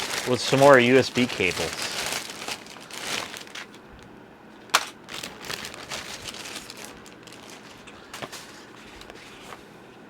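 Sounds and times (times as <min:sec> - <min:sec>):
plastic packaging crinkling: 0:00.0 - 0:04.1, 0:04.7 - 0:09.6.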